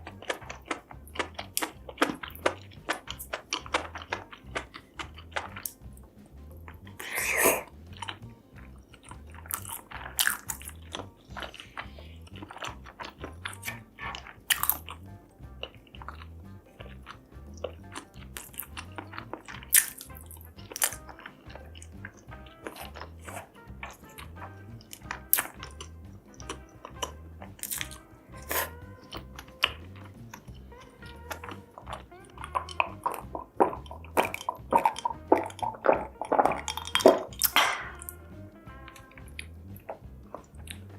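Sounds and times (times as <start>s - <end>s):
background music with pulsing beat: 0.0s - 40.9s
crunchy biting and chewing: 0.0s - 40.9s.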